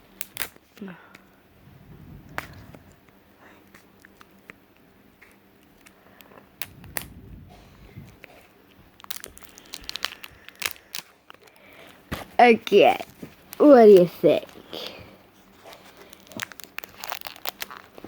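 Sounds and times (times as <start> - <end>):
plastic wrapper crinkling and tearing: 0.1 - 0.8, 8.1 - 18.0.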